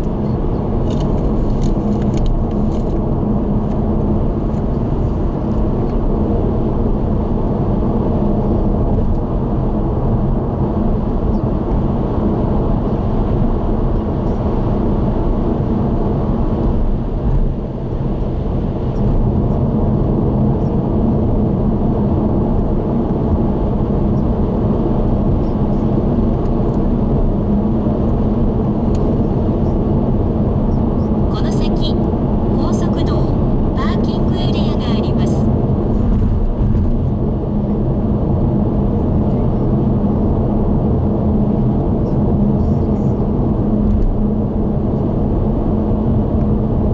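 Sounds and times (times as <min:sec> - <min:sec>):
tyre and road noise: 0:00.0 - 0:06.8
car engine hum: 0:00.0 - 0:46.9.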